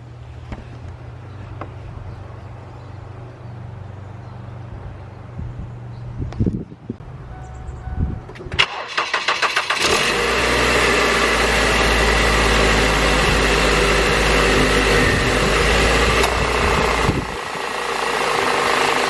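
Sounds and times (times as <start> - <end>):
car engine starting and idling: 8.2 - 19.0.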